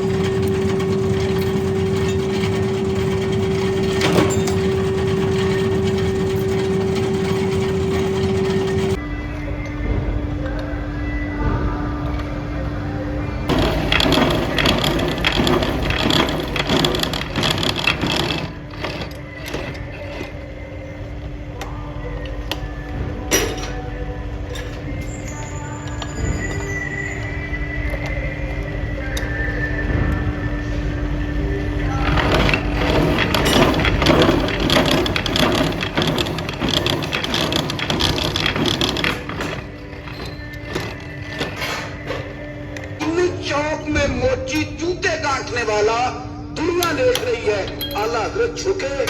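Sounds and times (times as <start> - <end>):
metal pieces pattering and rattling: 0.0 - 9.0, 13.5 - 20.4, 31.9 - 42.5
metalworking machinery clanking: 0.0 - 10.6, 13.5 - 45.2, 46.6 - 49.0
steady low hum: 0.0 - 49.0.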